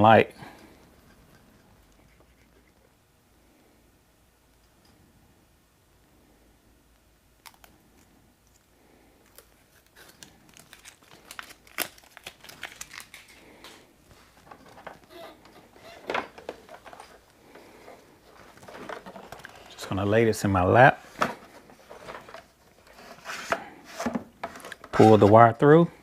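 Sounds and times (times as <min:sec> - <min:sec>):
tape crinkling and scraping: 0:07.4 - 0:25.7.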